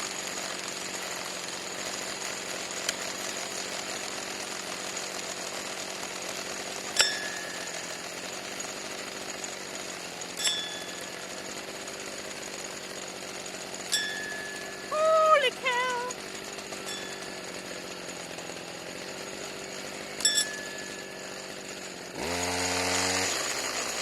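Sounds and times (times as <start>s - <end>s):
weed-eater engine running: 0.0s - 24.0s
sharp metallic clinks: 7.0s - 8.1s, 10.4s - 11.1s, 13.9s - 14.9s, 16.8s - 17.6s, 20.2s - 21.4s.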